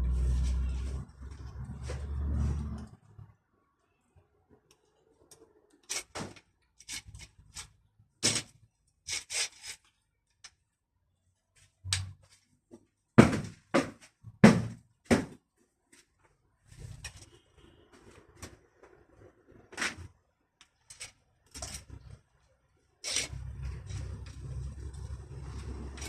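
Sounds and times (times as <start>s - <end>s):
hand tools and metal parts clinking: 23.0s - 26.0s.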